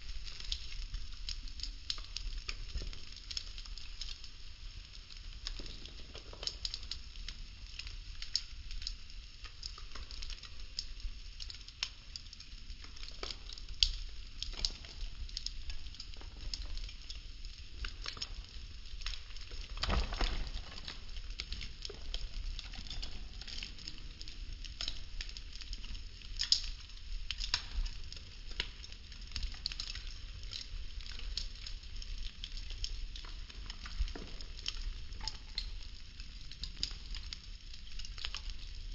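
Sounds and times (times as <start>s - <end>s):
fire crackles and pops: 0.0s - 38.9s
wood burning with hiss: 0.0s - 38.9s.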